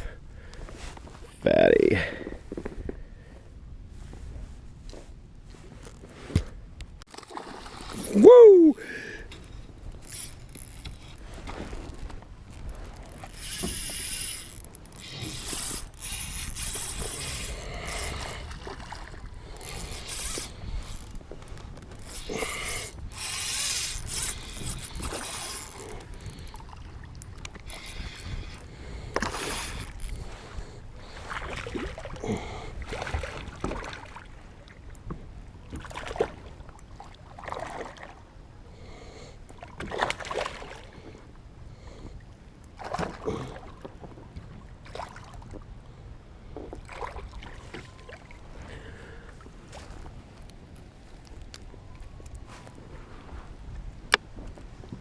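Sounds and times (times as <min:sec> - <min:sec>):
water splashing: 0:07.1 - 0:09.0
fishing gear knocks and clicks: 0:09.3 - 0:18.3, 0:19.5 - 0:26.6.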